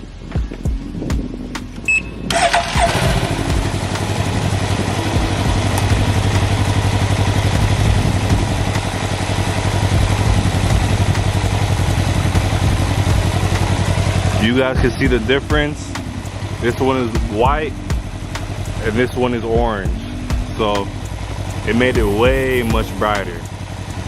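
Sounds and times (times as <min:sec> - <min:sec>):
short beep: 0:01.8 - 0:02.3
engine starting and idling: 0:01.9 - 0:17.4.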